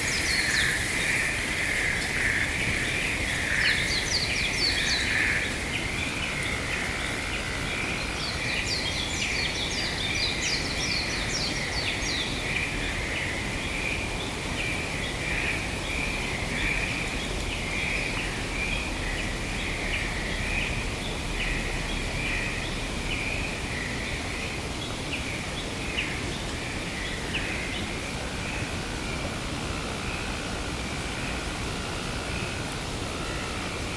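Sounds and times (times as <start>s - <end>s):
frog chorus: 0.0s - 11.8s
wind-like hiss: 0.0s - 33.9s.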